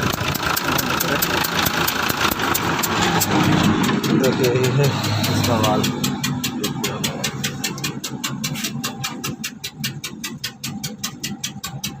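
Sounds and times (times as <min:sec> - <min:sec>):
sharp puffing tick: 0:00.0 - 0:12.0
vehicle engine idling: 0:00.0 - 0:12.0.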